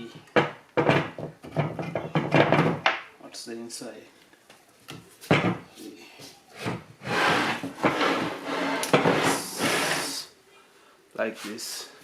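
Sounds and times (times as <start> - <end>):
metal parts scraping and rubbing: 7.0 - 10.2.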